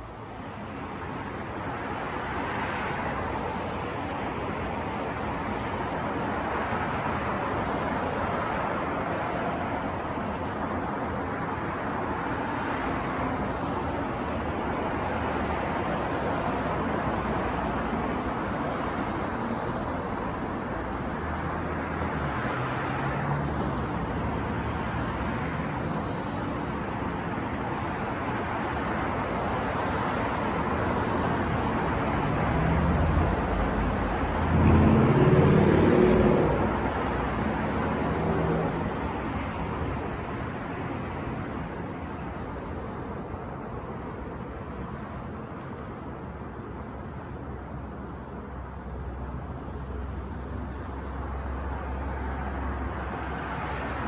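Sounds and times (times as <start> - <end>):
cars passing: 0.0 - 54.0
vehicle engine passing: 32.5 - 39.1.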